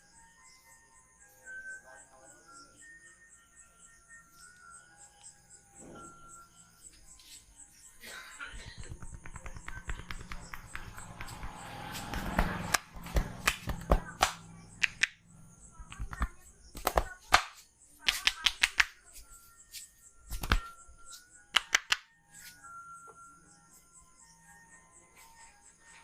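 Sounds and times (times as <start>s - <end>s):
faint background music: 0.0s - 26.0s
hands slapping skin: 8.8s - 15.2s, 15.9s - 20.8s, 21.5s - 22.1s.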